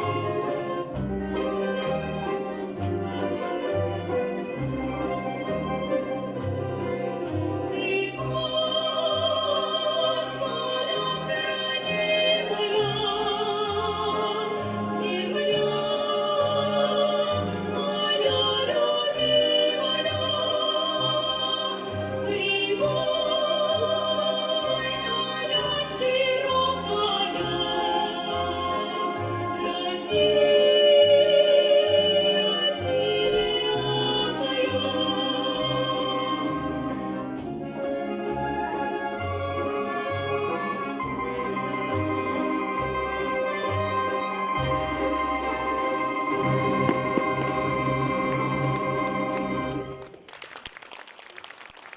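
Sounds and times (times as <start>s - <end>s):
folk instrument orchestra: 0.0s - 50.3s
women singing with vibrato: 7.5s - 37.5s.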